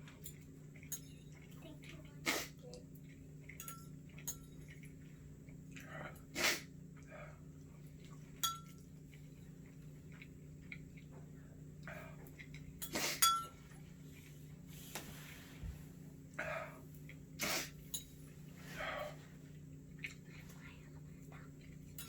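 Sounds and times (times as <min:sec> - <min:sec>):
faint clinks: 0:03.5 - 0:04.8, 0:17.9 - 0:18.4.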